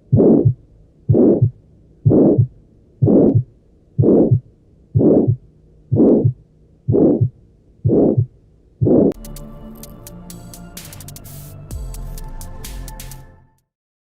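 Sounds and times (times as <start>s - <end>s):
harsh heart murmur: 0.0s - 9.2s
heartbeat through stethoscope: 0.0s - 9.2s.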